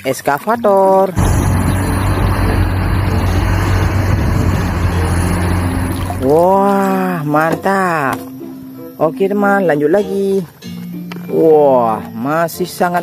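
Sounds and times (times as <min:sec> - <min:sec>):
heavy vehicle engine running: 0:01.2 - 0:07.0.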